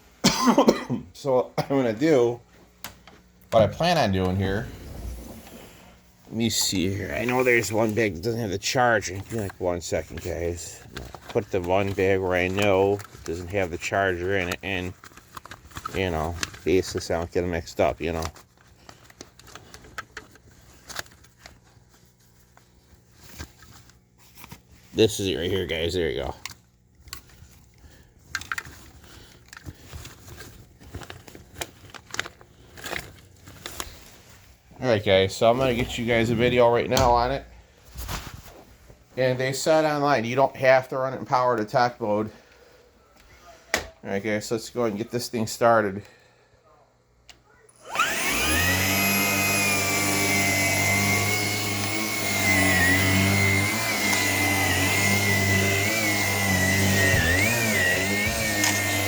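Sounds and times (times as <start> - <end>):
plastic crinkling: 9.0 - 24.9, 26.2 - 34.7
clicks and knocks of handling: 26.4 - 34.0
vacuum cleaner running: 35.3 - 37.4, 47.7 - 59.0.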